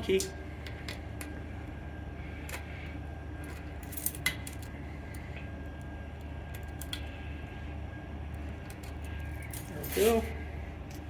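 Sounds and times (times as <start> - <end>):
low hum: 0.0 - 11.0.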